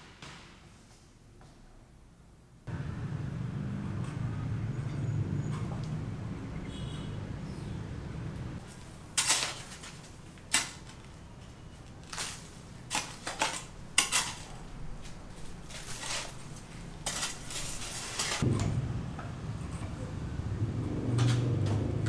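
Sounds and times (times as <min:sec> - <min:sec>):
hard objects clinking and clattering: 0:08.6 - 0:18.5.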